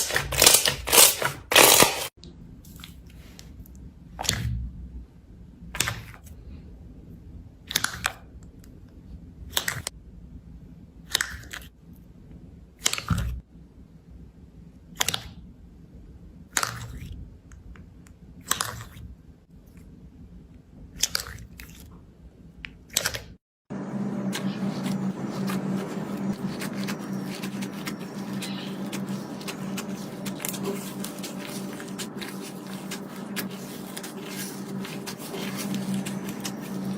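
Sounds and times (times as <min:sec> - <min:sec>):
steady low hum: 0:02.2 - 0:11.1, 0:11.7 - 0:22.8, 0:23.7 - 0:36.9.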